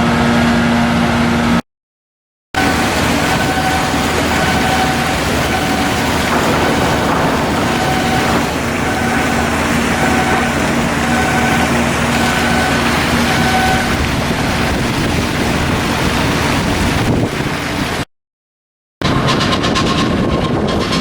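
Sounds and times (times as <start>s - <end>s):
heavy engine running: 0.0s - 1.6s, 2.6s - 18.1s, 19.0s - 21.0s
warning beeper short beeps: 2.6s - 14.0s.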